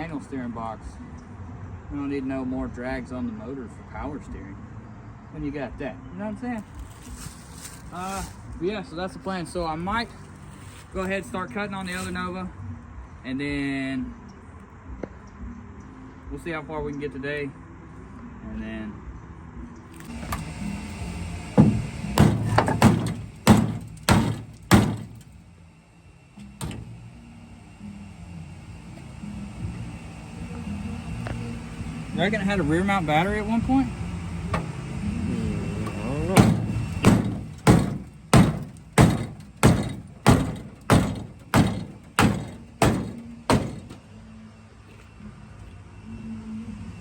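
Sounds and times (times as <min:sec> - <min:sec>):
hammer blows on sheet metal: 0:21.6 - 0:25.2, 0:35.9 - 0:44.0
metallic bangs on car body: 0:21.6 - 0:25.4, 0:26.6 - 0:27.0, 0:34.5 - 0:34.8, 0:35.9 - 0:44.1.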